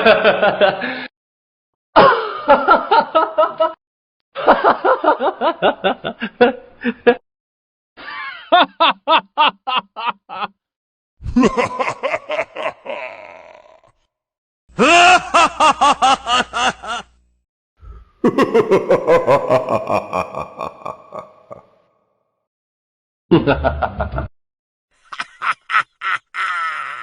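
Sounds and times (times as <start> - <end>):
men laughing: 0.0 - 1.0, 2.0 - 3.8, 4.4 - 7.2, 8.0 - 10.6, 11.3 - 13.9, 14.8 - 17.2, 18.2 - 21.8, 23.3 - 24.3, 25.0 - 27.0.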